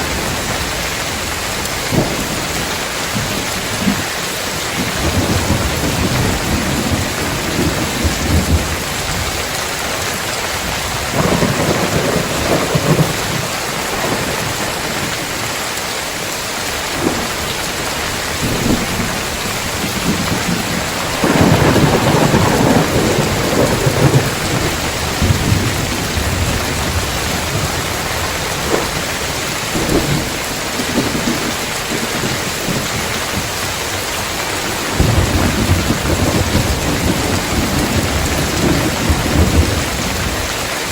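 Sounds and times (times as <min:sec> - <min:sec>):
heavy rain on tiled roof: 0:00.0 - 0:40.9
thunder rumbling: 0:00.0 - 0:40.9
sharp thunder cracks: 0:10.9 - 0:15.1, 0:17.0 - 0:33.5.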